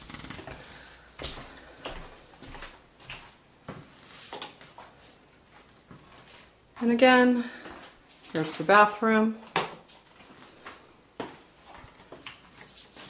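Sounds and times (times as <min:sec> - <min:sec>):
footsteps tapping: 0:00.1 - 0:03.9, 0:10.6 - 0:12.4.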